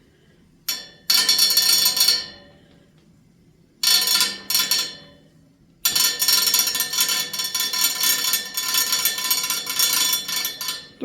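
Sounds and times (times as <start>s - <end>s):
fan blades clattering on metal: 0.7s - 2.5s, 3.8s - 5.1s, 5.9s - 11.0s.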